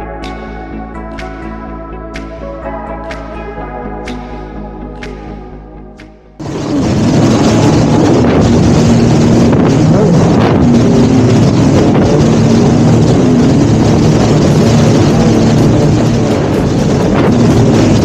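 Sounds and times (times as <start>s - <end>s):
jet ski engine running: 6.4s - 18.0s
wind on microphone: 6.4s - 18.0s.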